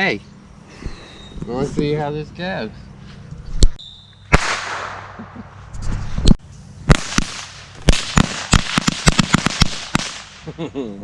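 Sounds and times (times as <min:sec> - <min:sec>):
fireworks cracking and hissing: 0:03.7 - 0:10.6
firework bang: 0:04.3 - 0:05.3, 0:06.9 - 0:10.4.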